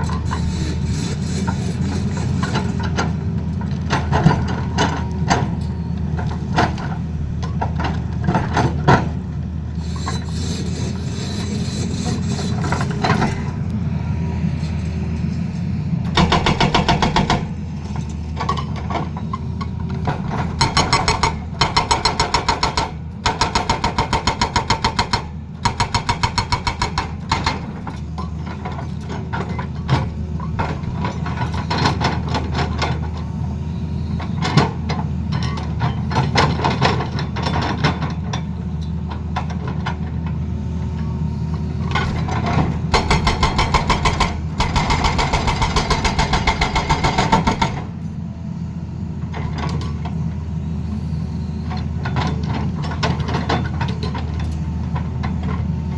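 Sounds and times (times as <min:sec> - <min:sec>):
diesel engine running: 0:00.0 - 0:55.9
hydraulic breaker hammering: 0:16.1 - 0:17.6, 0:42.0 - 0:47.9.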